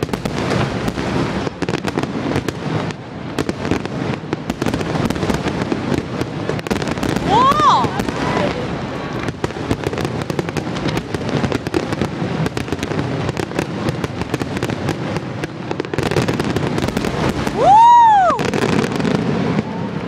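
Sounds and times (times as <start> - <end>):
fireworks crackling: 0.0 - 20.0
firework whistle: 6.8 - 9.2, 16.0 - 20.0.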